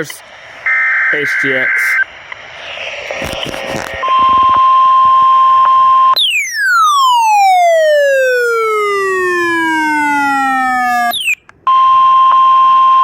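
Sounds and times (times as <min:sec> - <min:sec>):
steady warning alarm tone: 0:00.6 - 0:02.1, 0:04.0 - 0:12.9
tone gliding downward in pitch: 0:02.6 - 0:11.3.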